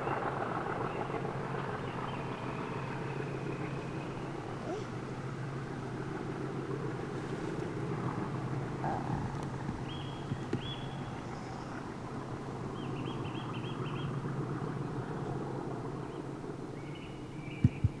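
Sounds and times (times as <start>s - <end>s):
low engine rumble: 0.0s - 16.6s
small birds chirping: 8.9s - 12.0s.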